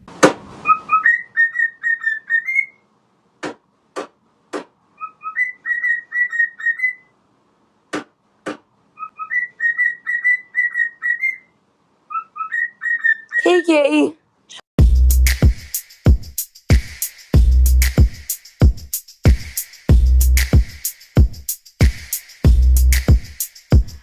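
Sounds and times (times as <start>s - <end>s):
sharp taps: 3.4s - 4.7s, 7.9s - 8.6s.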